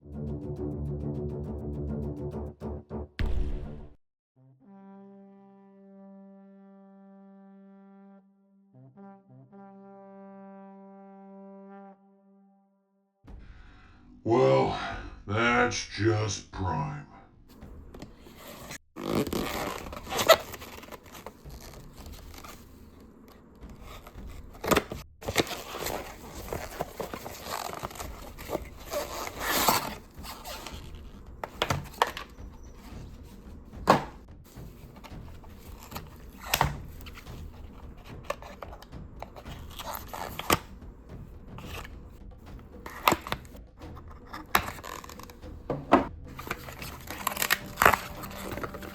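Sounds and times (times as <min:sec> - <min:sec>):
packaging rustling: 0:18.4 - 0:22.7, 0:23.6 - 0:33.0, 0:34.8 - 0:40.6, 0:44.4 - 0:45.4, 0:46.4 - 0:48.9.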